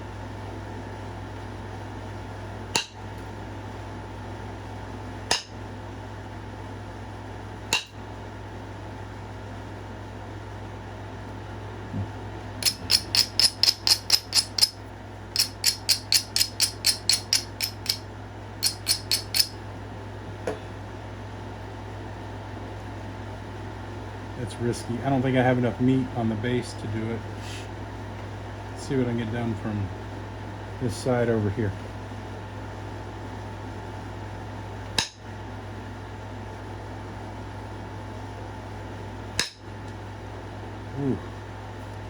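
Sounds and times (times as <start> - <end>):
steady low hum: 0.0 - 42.0
light strokes on stone edge: 12.6 - 14.8, 15.4 - 18.0, 18.6 - 19.5
stone clicks: 12.6 - 14.8, 15.4 - 18.0, 18.6 - 19.5.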